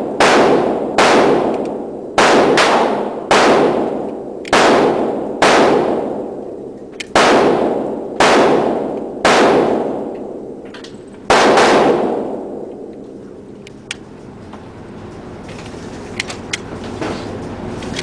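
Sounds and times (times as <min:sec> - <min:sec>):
echoing gunshots: 0:00.0 - 0:13.3.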